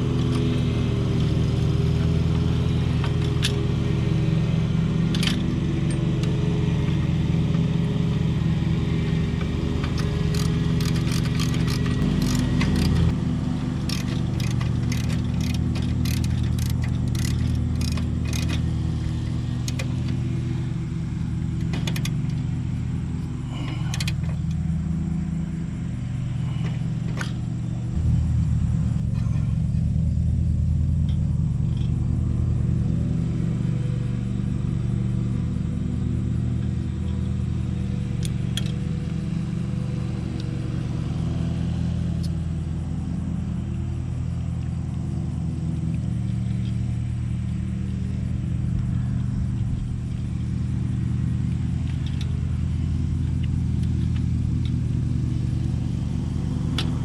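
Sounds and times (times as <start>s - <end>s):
low engine-like drone: 0.0s - 57.0s
sharp metallic clicks: 5.0s - 6.4s, 9.4s - 20.4s, 38.2s - 38.9s.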